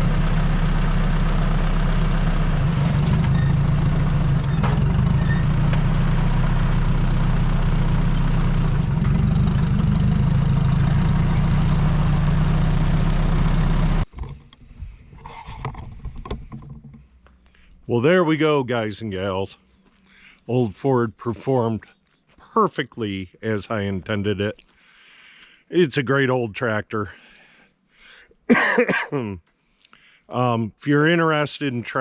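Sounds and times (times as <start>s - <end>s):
tractor engine droning: 0.0s - 19.3s.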